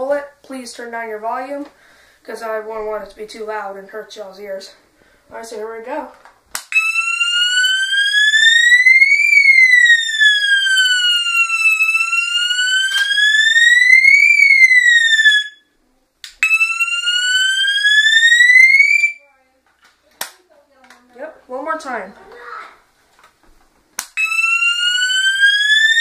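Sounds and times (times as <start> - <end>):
fire alarm siren wailing: 6.7 - 15.7, 16.4 - 19.2, 24.2 - 26.0.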